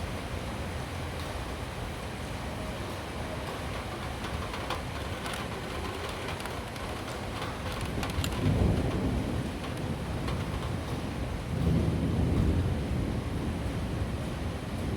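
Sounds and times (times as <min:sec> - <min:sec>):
raindrop ticks: 0:03.3 - 0:12.6.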